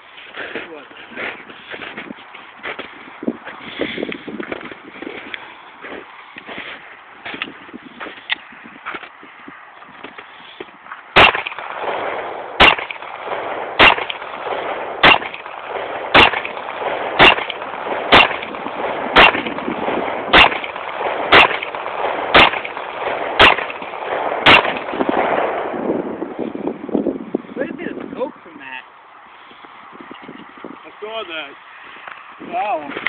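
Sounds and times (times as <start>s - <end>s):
pistol shots with echo: 11.2s - 25.8s.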